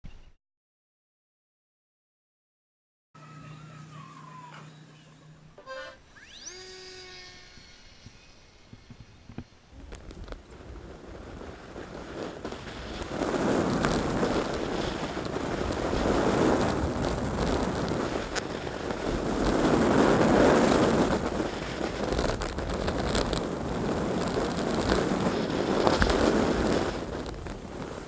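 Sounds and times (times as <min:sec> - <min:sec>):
wind rushing over microphone: 0:08.0 - 0:28.0
scattered crackles: 0:08.8 - 0:28.0.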